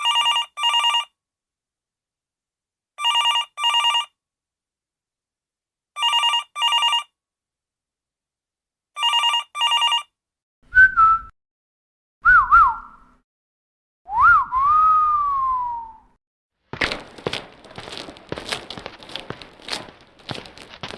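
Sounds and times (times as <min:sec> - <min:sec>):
telephone ringing: 0:00.0 - 0:01.2, 0:03.0 - 0:04.2, 0:06.0 - 0:07.2, 0:09.0 - 0:10.2
person whistling: 0:10.7 - 0:11.3, 0:12.2 - 0:13.1, 0:14.1 - 0:16.2.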